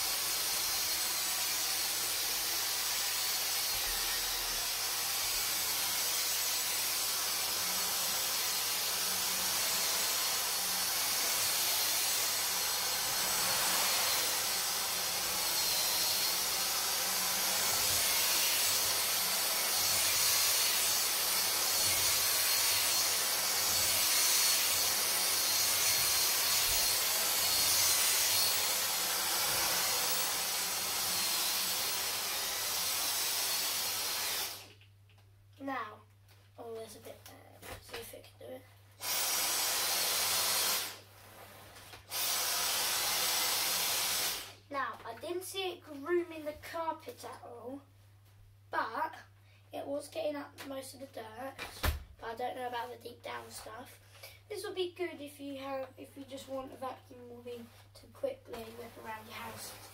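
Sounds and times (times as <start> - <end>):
vacuum cleaner running on carpet: 0.0 - 34.7, 39.1 - 41.0.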